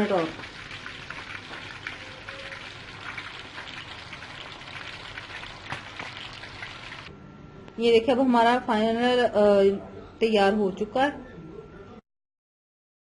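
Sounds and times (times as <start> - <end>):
chicken sizzling in hot oil: 0.0 - 7.1.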